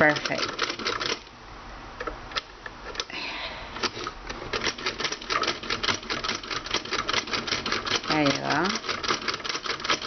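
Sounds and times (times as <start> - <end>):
toy sewing machine clattering: 0.0 - 1.3, 4.6 - 10.0.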